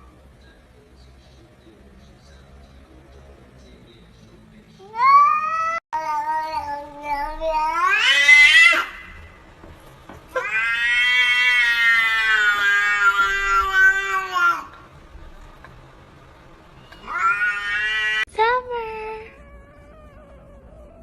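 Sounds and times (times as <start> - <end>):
cat yowling: 4.8 - 9.4, 10.3 - 14.8, 16.9 - 18.3, 19.1 - 21.0.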